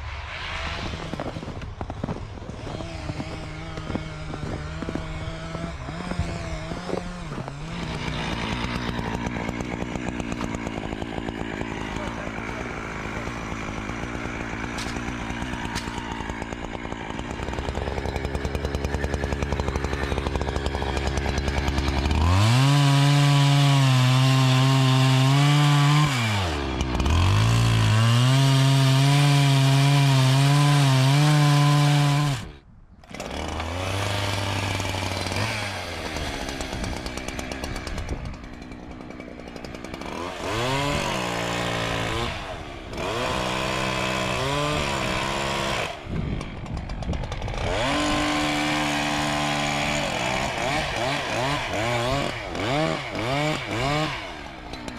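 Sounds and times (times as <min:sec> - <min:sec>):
chainsaw revving: 0:00.6 - 0:54.9.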